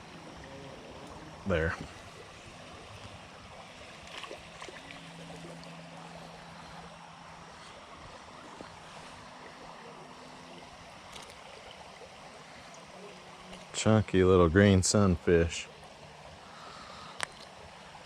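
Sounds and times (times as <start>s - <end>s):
creek water running: 0.0s - 18.0s
faint clicks: 17.1s - 17.5s.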